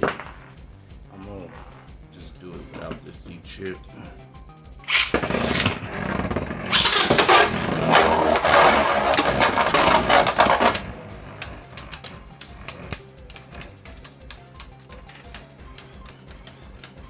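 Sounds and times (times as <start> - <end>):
spinning tops clashing and rattling: 4.8 - 5.8, 6.6 - 17.0
scattered clicks: 6.7 - 17.0.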